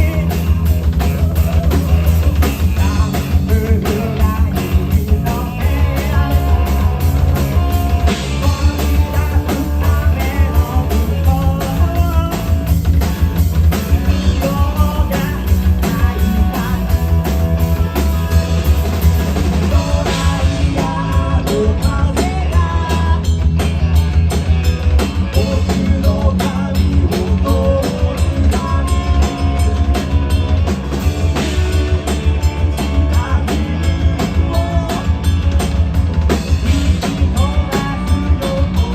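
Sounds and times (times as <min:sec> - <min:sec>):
person singing: 0:00.0 - 0:07.0, 0:07.9 - 0:12.6, 0:14.1 - 0:18.6, 0:19.6 - 0:23.4, 0:25.3 - 0:30.1, 0:37.1 - 0:38.9
distorted guitar: 0:00.0 - 0:38.9
drum kit beat: 0:00.0 - 0:38.9
heavy bass: 0:00.0 - 0:38.9.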